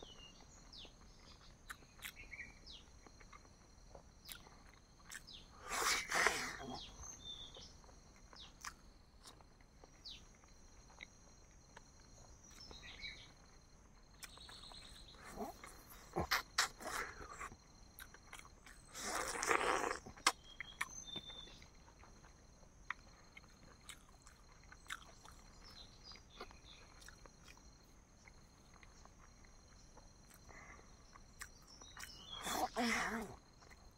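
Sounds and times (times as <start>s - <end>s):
eating with rustling and smacking: 0.1s - 33.9s.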